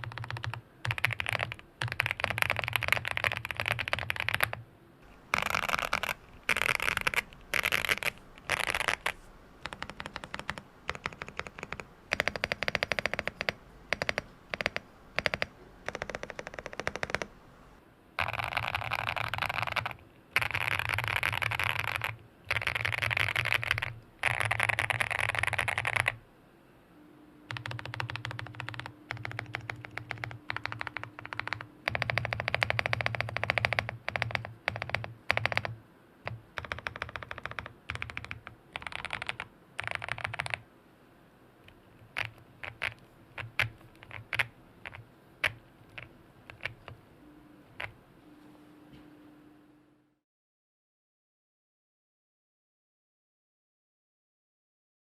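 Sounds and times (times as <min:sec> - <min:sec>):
mechanical keyboard clacking: 0:00.0 - 0:04.6, 0:05.2 - 0:17.5, 0:18.2 - 0:26.2, 0:27.5 - 0:40.6, 0:41.7 - 0:47.0.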